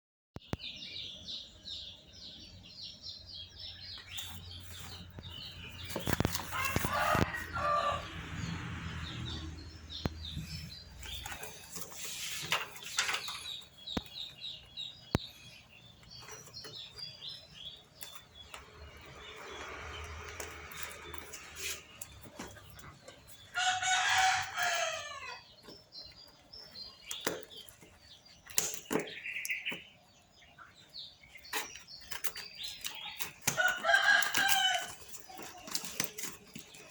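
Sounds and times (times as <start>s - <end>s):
chickens peeping and calling: 0.4s - 36.9s.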